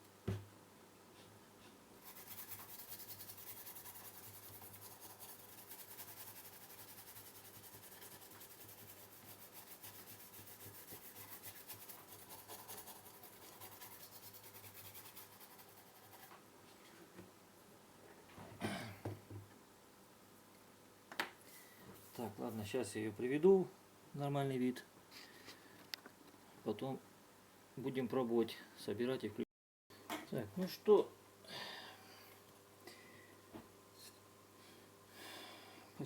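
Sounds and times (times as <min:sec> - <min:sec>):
scrubbing a circuit board: 0:02.0 - 0:16.3.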